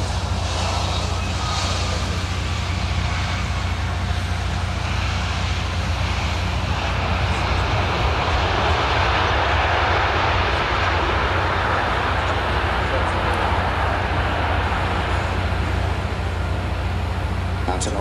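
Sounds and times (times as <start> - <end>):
jet engines roaring: 0.0 - 18.0.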